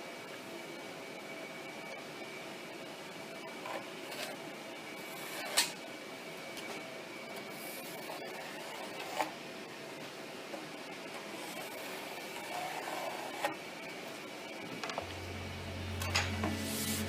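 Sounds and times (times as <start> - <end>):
faint hum and hiss: 0.0 - 17.0.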